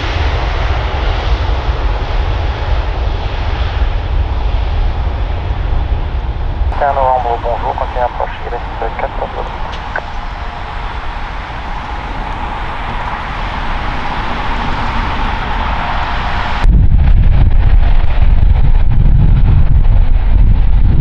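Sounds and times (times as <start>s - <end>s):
jet engine roar: 4.0s - 18.7s
wind buffeting microphone: 6.0s - 21.0s.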